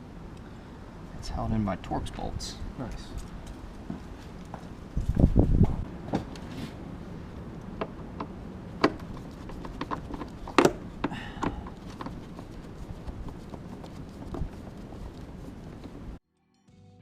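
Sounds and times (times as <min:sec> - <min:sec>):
tools and plastic parts knocking: 0:08.8 - 0:14.5.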